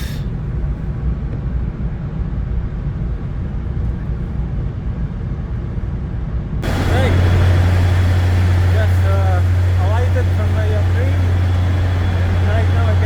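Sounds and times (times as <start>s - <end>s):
train interior rumble: 2.9s - 13.0s.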